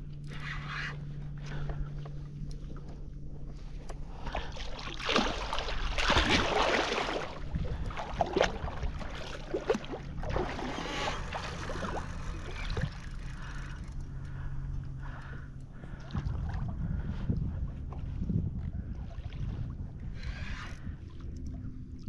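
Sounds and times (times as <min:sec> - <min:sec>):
water splashing at a kayak: 0:02.6 - 0:13.9.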